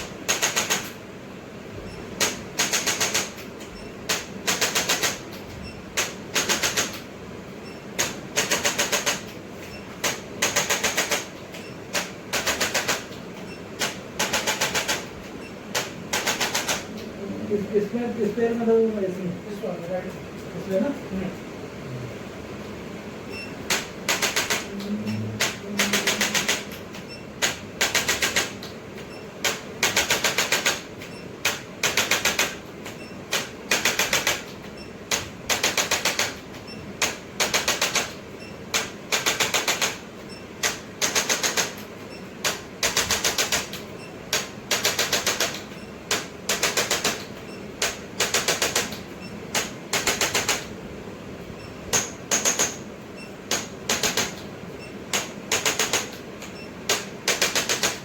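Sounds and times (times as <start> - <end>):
percussion massager rapid clicking: 0.0 - 1.0, 2.2 - 7.1, 8.0 - 9.4, 10.0 - 13.2, 13.8 - 15.1, 15.7 - 17.0, 23.7 - 24.7, 25.4 - 40.0, 40.6 - 50.7, 51.9 - 52.8, 53.5 - 54.5, 55.1 - 58.0.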